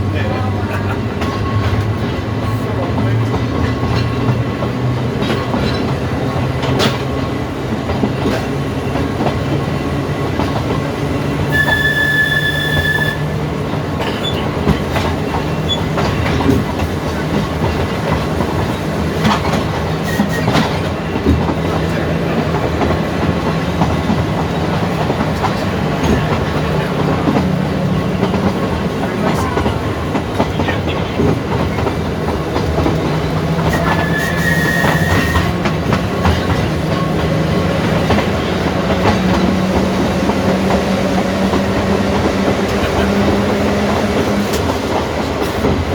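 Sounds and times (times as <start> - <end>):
tram motor and gear hum: 0.0 - 45.9
rail-joint clicks: 0.4 - 45.9
high whistle-like tone: 11.5 - 13.3, 33.7 - 35.4.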